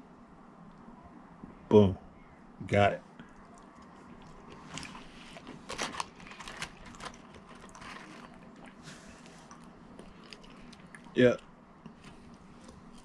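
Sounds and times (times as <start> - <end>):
person chewing crunchy food: 3.2 - 11.2, 11.8 - 13.0.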